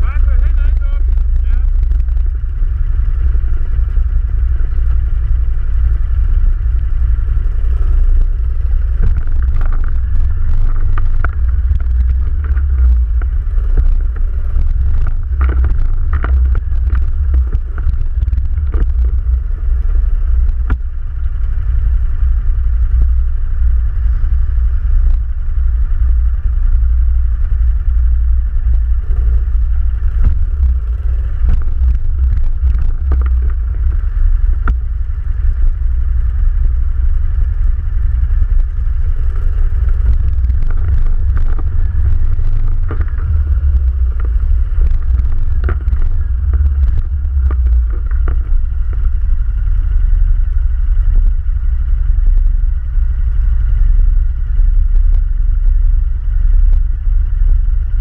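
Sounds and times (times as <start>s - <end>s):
quad bike engine running: 0.0s - 58.0s.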